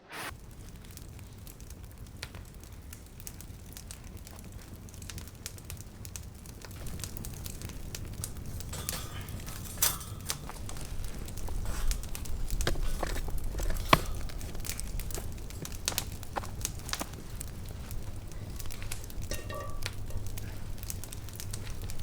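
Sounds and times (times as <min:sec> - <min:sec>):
crackles and clicks: 0:00.3 - 0:22.0
loud crack: 0:06.5 - 0:22.0.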